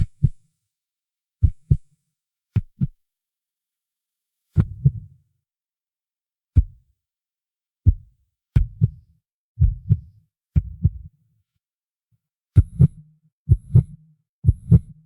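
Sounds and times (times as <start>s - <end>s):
heartbeat thuds: 1.4s - 1.8s, 4.6s - 5.1s, 6.6s - 6.8s, 7.8s - 11.1s, 12.6s - 15.0s.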